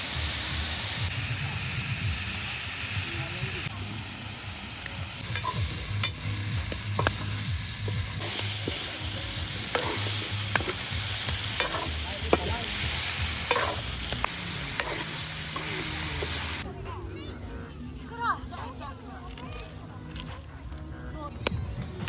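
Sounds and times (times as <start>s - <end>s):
food sizzling in a pan: 0.0s - 16.6s
utensil clinking and scraping: 5.2s - 16.6s.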